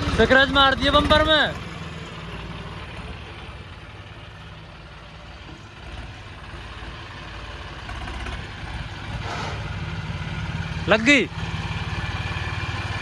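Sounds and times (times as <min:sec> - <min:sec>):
tractor engine idling: 0:00.0 - 0:13.0.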